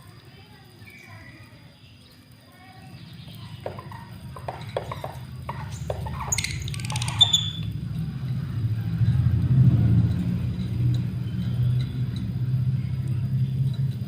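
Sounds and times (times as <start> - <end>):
passing vehicle rumble: 3.1 - 14.0
lovebird squawking and chirping: 3.6 - 7.7.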